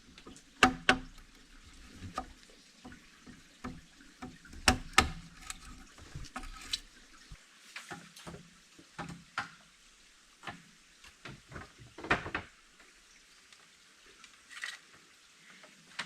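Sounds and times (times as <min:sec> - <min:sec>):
objects being handled: 0:04.5 - 0:07.4.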